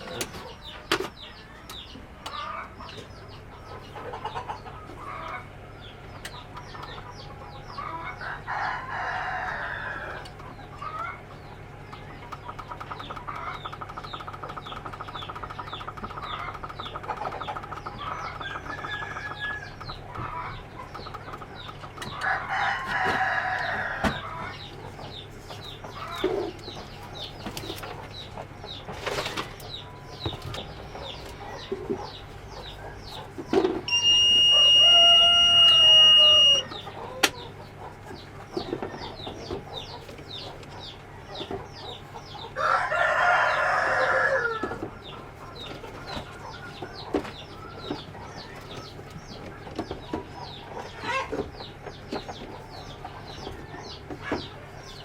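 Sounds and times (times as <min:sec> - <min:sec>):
chickens clucking: 0:00.0 - 0:55.0
rooster crowing: 0:08.2 - 0:10.3, 0:18.4 - 0:19.8, 0:22.1 - 0:24.4, 0:33.9 - 0:37.3, 0:42.6 - 0:44.8.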